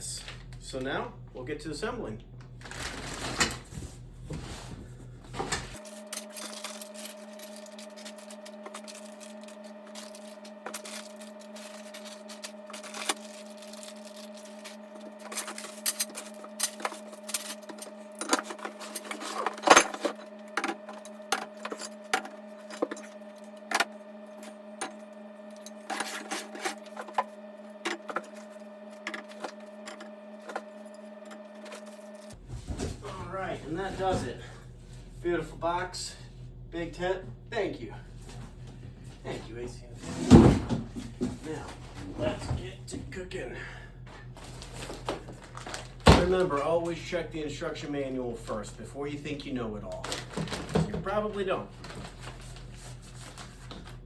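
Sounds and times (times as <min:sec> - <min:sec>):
steady hum: 0:00.0 - 0:54.0.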